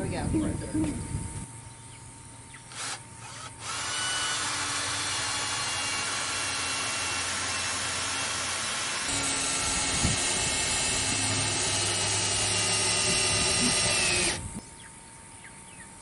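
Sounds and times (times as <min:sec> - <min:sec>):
power tool motor whine: 0:02.7 - 0:14.6.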